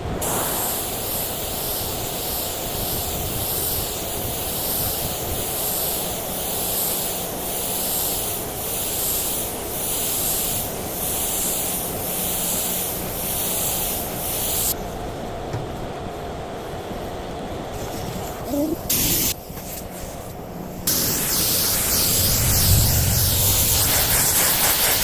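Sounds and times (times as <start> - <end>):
steady low rumble: 0.0 - 3.4, 21.0 - 24.9
spray gun hissing: 0.0 - 14.8, 18.8 - 19.4, 20.9 - 25.0.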